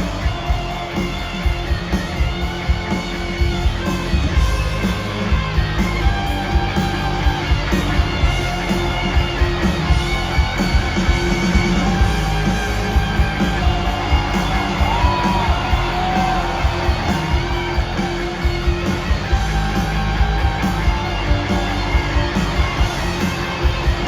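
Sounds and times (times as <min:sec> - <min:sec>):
rock music with guitars and drums: 0:00.0 - 0:24.0.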